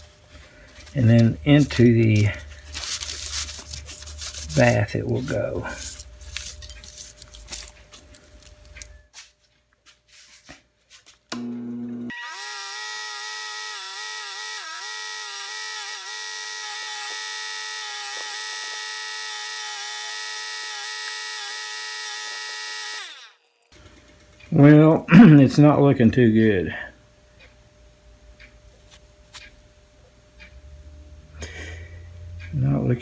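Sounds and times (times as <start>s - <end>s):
metal parts clicking: 0.9s - 7.8s
motorised wire wheel running: 11.4s - 24.8s.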